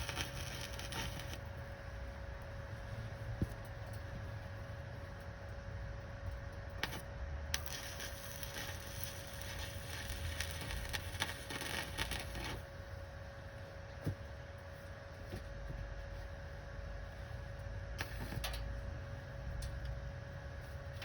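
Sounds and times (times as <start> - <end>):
welder arc crackling: 0.0 - 2.8, 6.7 - 12.8, 18.0 - 18.6
steady hum: 0.0 - 21.0.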